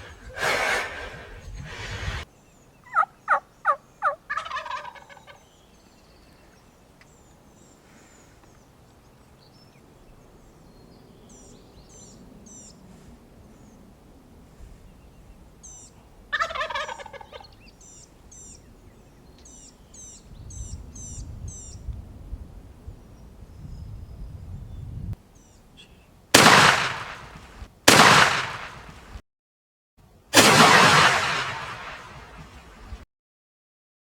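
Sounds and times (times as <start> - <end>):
turkey gobbling: 2.9 - 5.4, 16.3 - 17.5
small birds chirping: 17.3 - 21.9, 23.1 - 26.2
loud shotgun blasts: 26.4 - 29.2, 30.4 - 32.6.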